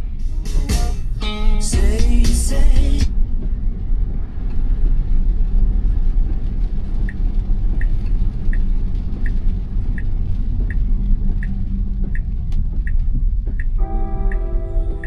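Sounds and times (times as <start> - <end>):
road and tyre rumble: 0.0 - 15.0
turn signal ticking: 0.1 - 3.5, 6.4 - 15.0.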